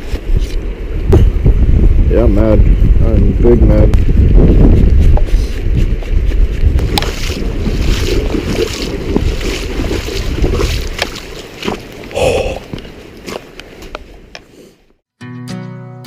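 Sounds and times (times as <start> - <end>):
wind buffeting microphone: 0.0 - 14.3.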